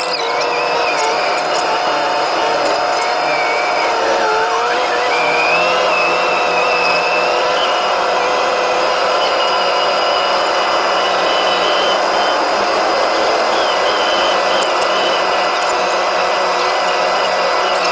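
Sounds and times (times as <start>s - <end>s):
snow vehicle engine droning: 0.0s - 17.9s.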